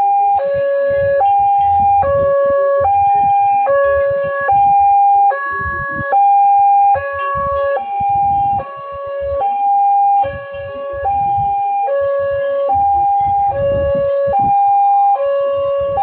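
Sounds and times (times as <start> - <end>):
two-tone hi-lo siren: 0.0 - 16.0
low rumbling: 0.5 - 16.0.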